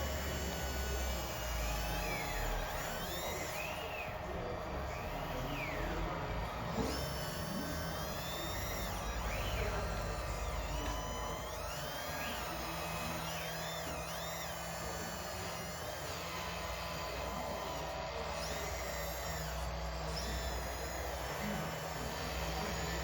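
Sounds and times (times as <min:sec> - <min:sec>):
small electric motors whining: 0:00.0 - 0:23.0.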